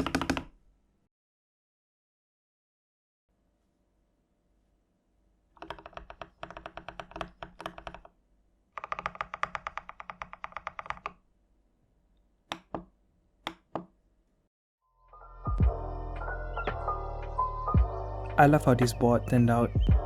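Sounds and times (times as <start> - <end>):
mechanical keyboard typing: 0.0 - 0.6, 5.6 - 8.1, 8.8 - 11.2
music: 14.8 - 20.0.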